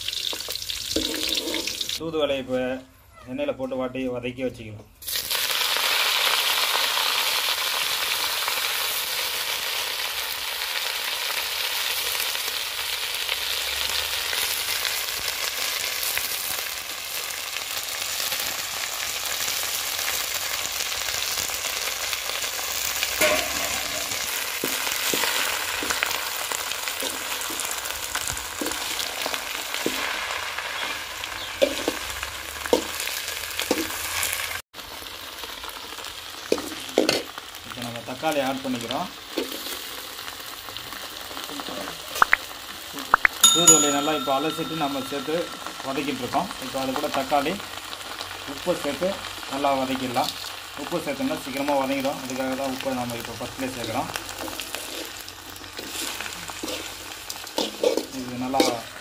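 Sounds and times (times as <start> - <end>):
leaves sizzling in hot oil: 0.0 - 2.0, 5.0 - 59.0
spatula scraping a pan: 1.0 - 2.0, 54.4 - 58.9.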